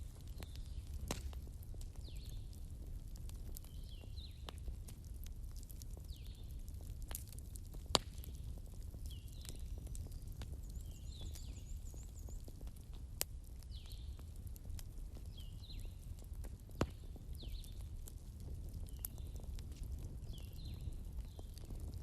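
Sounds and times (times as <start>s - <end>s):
bonfire wood crackling: 0.0s - 22.0s
sharp pop of burning wood: 0.2s - 2.4s, 7.0s - 12.6s, 16.4s - 17.8s.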